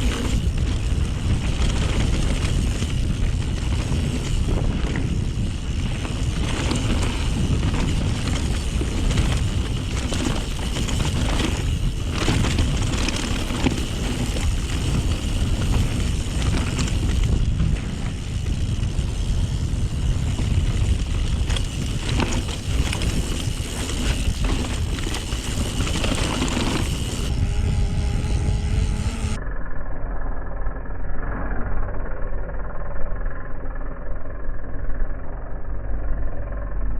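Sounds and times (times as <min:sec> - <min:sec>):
bike clicks and rattles: 0:00.0 - 0:29.4
bike tyre noise on dirt: 0:00.0 - 0:29.4
wind rumble on microphone: 0:00.0 - 0:29.6.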